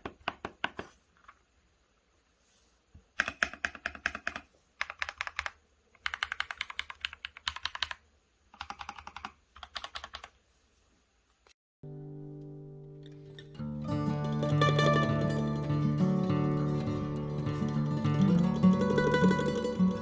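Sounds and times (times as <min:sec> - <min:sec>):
mechanical keyboard typing: 0:03.2 - 0:10.4.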